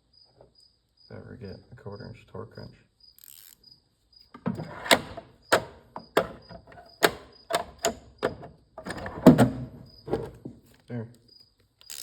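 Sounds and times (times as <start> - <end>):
metal tool parts clicking and knocking: 4.4 - 9.5.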